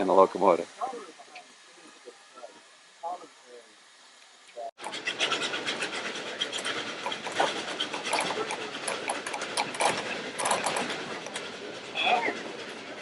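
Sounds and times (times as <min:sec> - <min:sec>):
hissing rush of running train: 0:00.0 - 0:13.0
steam locomotive clanking: 0:04.8 - 0:13.0.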